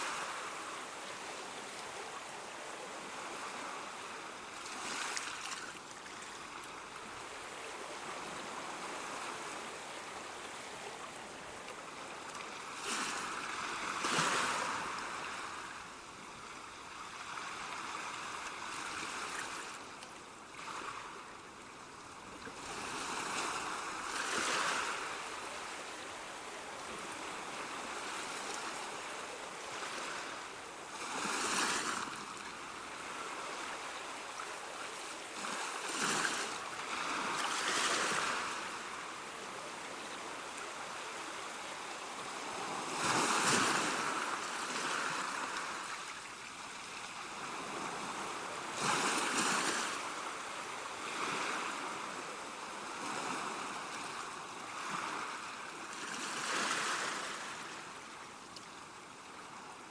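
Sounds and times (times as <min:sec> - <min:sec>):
ocean waves breaking: 0:00.0 - 0:19.8, 0:22.6 - 0:57.8.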